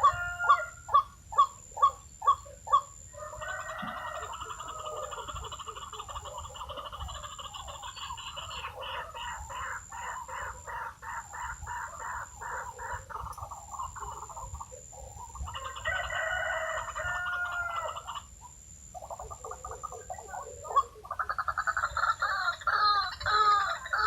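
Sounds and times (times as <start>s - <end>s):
waterhens calling: 0.0s - 18.3s, 18.9s - 24.0s.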